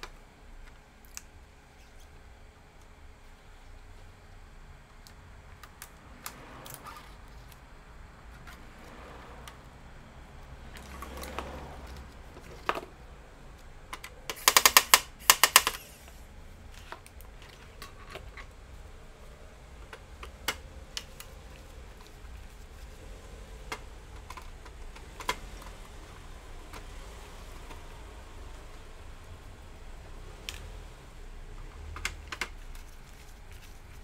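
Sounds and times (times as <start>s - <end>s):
small tools clicking and tapping: 13.6s - 16.0s, 31.6s - 33.7s.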